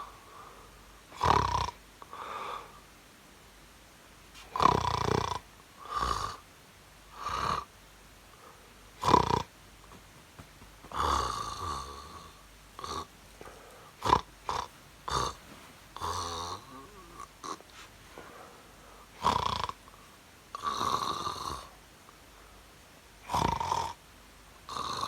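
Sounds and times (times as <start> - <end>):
person snoring: 1.1 - 2.2, 7.2 - 7.7, 9.0 - 9.5, 10.9 - 13.1, 14.0 - 18.5, 19.1 - 19.8, 20.6 - 21.7, 23.3 - 24.0, 24.7 - 25.0.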